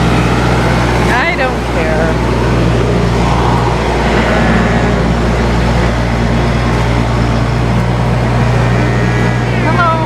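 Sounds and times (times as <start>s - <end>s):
loud mechanical hum: 0.0s - 10.0s
rushing noise: 2.1s - 7.8s.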